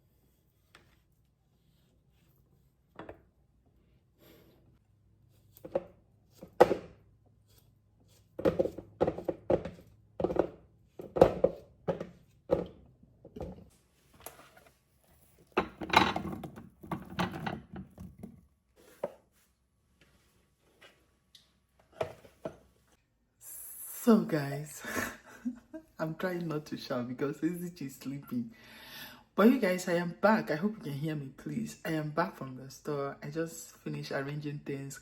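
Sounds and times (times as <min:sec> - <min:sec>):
knocks and thuds of handled objects: 0:08.4 - 0:13.7.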